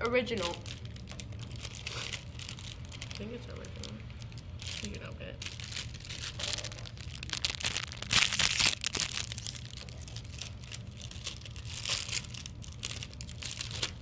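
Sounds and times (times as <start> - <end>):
plastic wrapper crinkling and tearing: 0.0 - 14.0.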